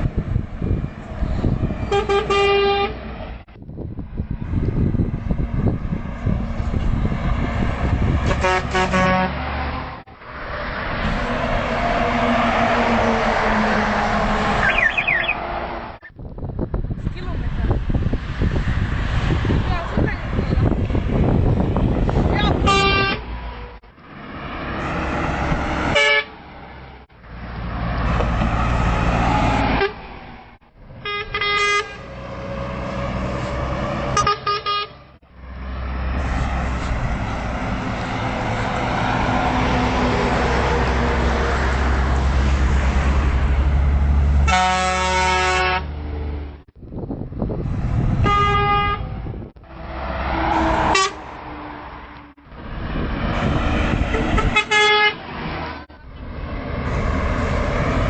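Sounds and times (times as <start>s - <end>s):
truck engines rumbling: 0.0s - 58.0s
truck horn toots: 1.8s - 3.1s, 8.2s - 9.4s, 22.4s - 23.3s, 25.9s - 26.4s, 31.0s - 32.2s, 34.1s - 35.0s, 44.4s - 46.0s, 48.2s - 49.2s, 50.6s - 51.3s, 54.1s - 55.3s.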